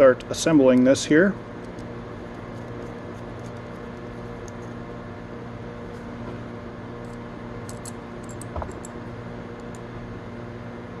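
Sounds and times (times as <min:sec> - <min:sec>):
mechanical room hum: 0:00.0 - 0:11.0
light clicks of small parts: 0:00.7 - 0:00.9.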